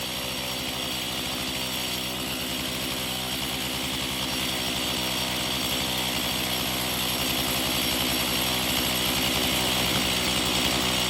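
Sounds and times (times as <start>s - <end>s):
chainsaw cutting log: 0.0s - 11.0s.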